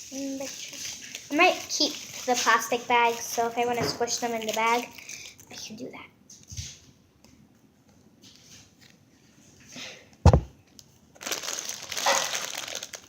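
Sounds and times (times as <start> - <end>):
plastic bag crinkling: 0.0 - 5.8, 11.2 - 13.0
sharp thump: 10.3 - 10.5.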